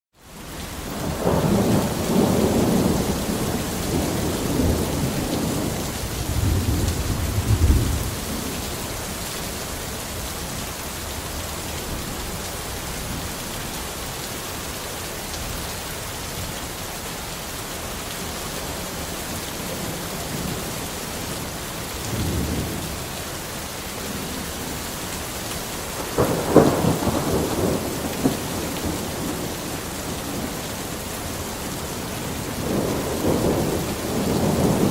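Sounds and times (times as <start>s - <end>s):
heavy rain hissing: 0.4s - 34.9s
thunder rumbling: 0.9s - 8.8s, 25.8s - 34.9s
thunderclap cracking: 26.0s - 30.6s.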